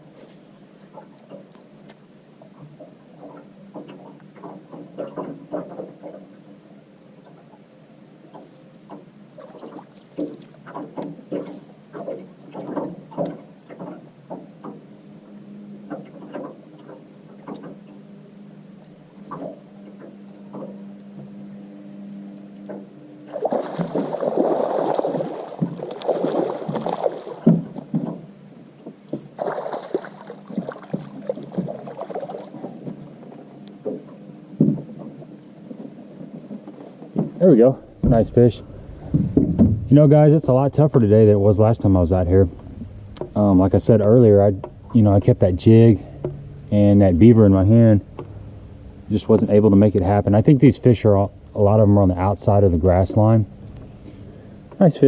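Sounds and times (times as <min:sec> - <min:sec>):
steady hum: 0:00.0 - 0:55.0
water slapping against boat hull: 0:08.3 - 0:14.8, 0:22.7 - 0:54.0.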